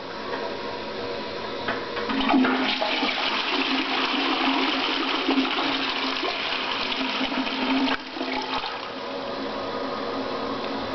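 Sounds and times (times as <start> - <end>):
toilet flushing: 2.1 - 9.1.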